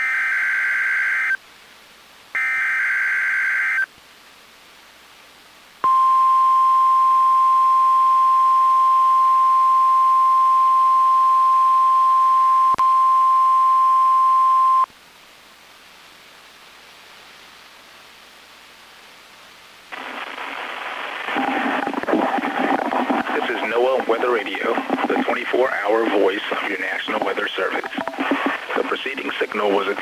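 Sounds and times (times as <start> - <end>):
buzzy digital data tones: 19.9 - 30.0.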